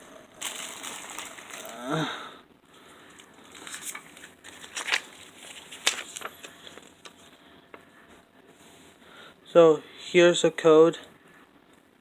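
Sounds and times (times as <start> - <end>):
rustling and crinkling paper: 0.3 - 2.1, 2.7 - 9.0.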